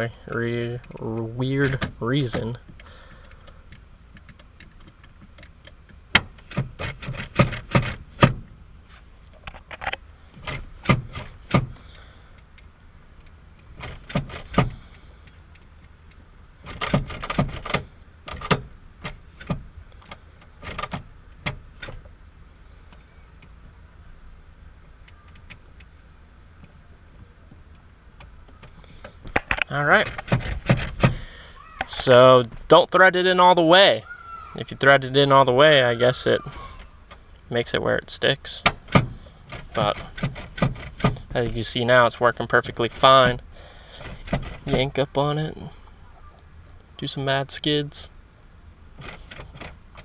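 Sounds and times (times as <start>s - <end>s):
handbrake lever clicking: 0.0s - 8.6s, 9.2s - 22.2s, 24.8s - 26.0s, 27.7s - 31.2s, 38.6s - 41.6s, 43.2s - 44.9s, 49.0s - 50.0s.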